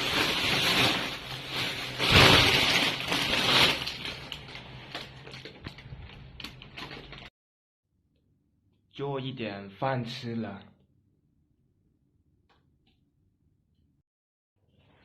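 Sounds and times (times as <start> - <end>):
plastic packaging crinkling: 0.0 - 7.3.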